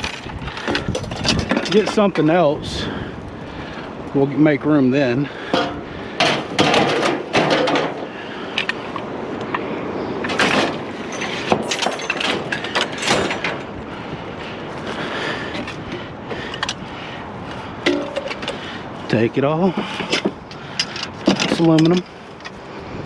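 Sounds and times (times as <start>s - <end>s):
metal tubing clanking and rattling: 0.0s - 2.2s, 5.5s - 8.1s, 10.4s - 13.7s, 17.8s - 18.6s.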